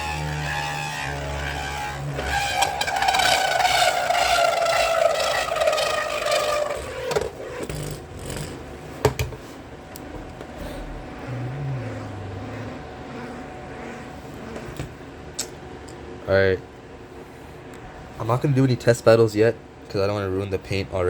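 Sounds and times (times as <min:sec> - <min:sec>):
spinning top whine: 0:00.0 - 0:09.1, 0:10.0 - 0:15.6.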